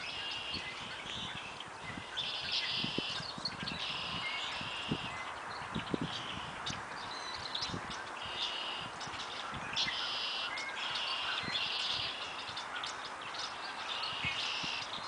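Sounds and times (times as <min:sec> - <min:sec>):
birds chirping trilled phrases: 0:00.0 - 0:15.0.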